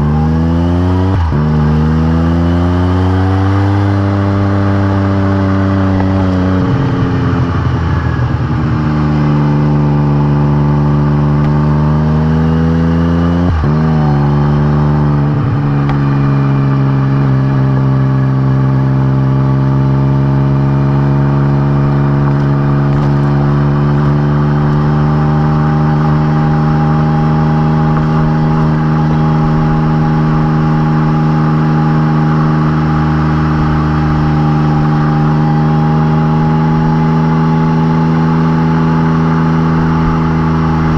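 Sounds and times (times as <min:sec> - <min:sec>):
motorcycle exhaust on road: 0:00.0 - 0:40.9.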